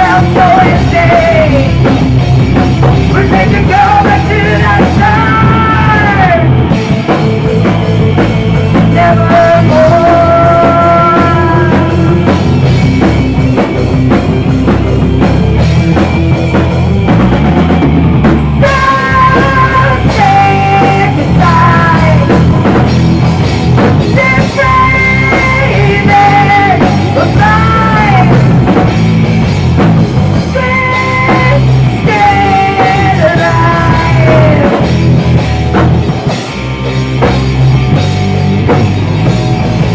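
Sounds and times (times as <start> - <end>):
woman singing: 0.0 - 1.8, 3.1 - 6.5, 8.8 - 12.3, 18.6 - 22.9, 24.0 - 28.6, 30.4 - 34.9
distorted guitar: 0.0 - 39.9
drum kit: 0.0 - 39.9
live rock band playing: 0.0 - 39.9.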